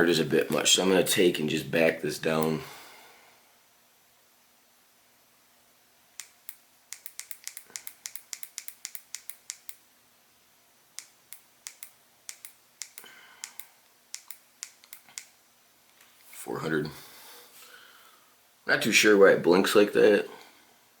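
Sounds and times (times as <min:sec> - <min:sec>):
soldering iron buttons clicking: 0:06.2 - 0:09.8.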